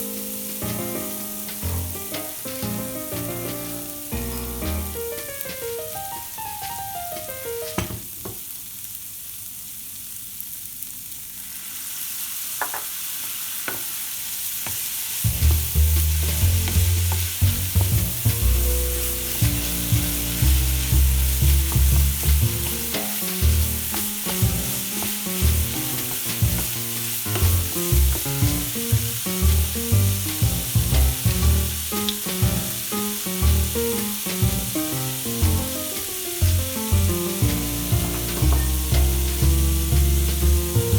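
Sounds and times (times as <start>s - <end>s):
food sizzling in frying pan: 0.0s - 40.9s
background music with bass: 0.7s - 5.2s, 15.3s - 40.9s
sharp knocks: 34.4s - 40.9s.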